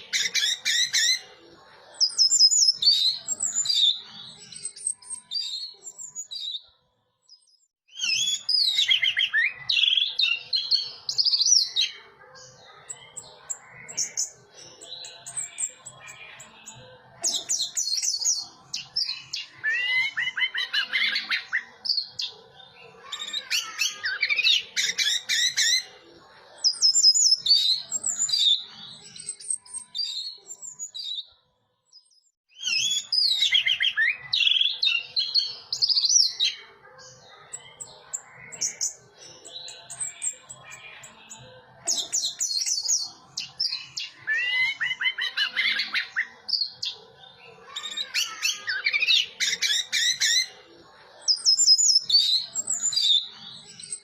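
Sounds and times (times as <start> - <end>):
thrush singing whistles and chirps: 2.0 - 11.9, 26.6 - 31.3, 31.9 - 36.4, 51.3 - 54.0.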